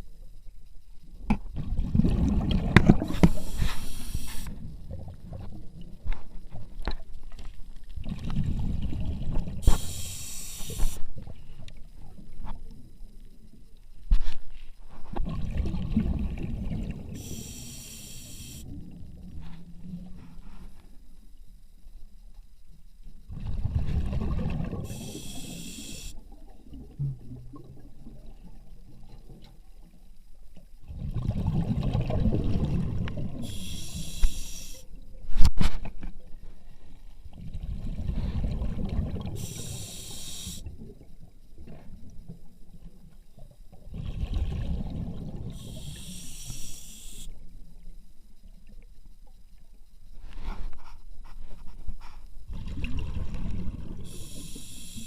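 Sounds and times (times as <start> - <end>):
short hiss: 3.1 - 4.6, 9.6 - 11.1, 17.2 - 18.7, 24.9 - 26.2, 33.4 - 34.9, 39.4 - 40.7, 45.6 - 47.4, 54.1 - 55.0.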